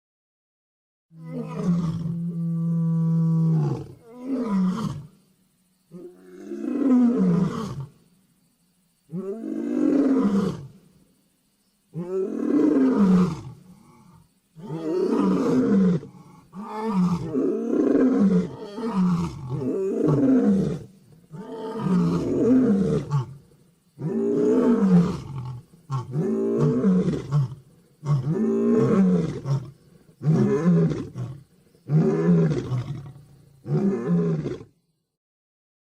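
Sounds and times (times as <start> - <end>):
lion roaring: 12.0 - 23.4, 24.0 - 34.7.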